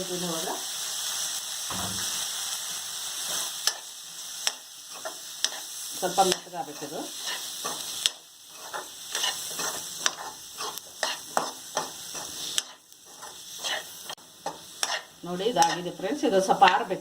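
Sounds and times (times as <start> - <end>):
food sizzling in oil: 0.0 - 17.0
utensil scraping pan: 8.5 - 15.8.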